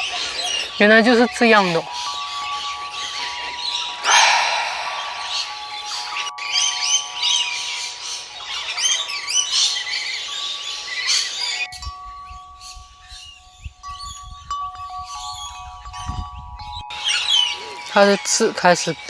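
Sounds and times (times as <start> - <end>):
birds chirping: 0.0 - 11.6
soft chime-like music: 0.0 - 19.0
wind rumble on microphone: 12.0 - 16.8.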